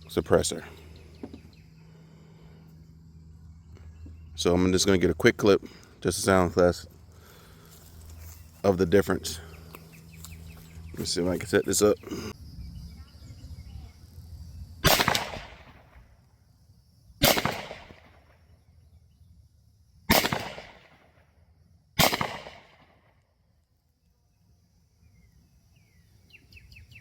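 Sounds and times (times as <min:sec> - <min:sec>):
air rifle shots echoing: 0:14.8 - 0:16.0, 0:17.2 - 0:18.3, 0:20.1 - 0:21.2, 0:22.0 - 0:23.1.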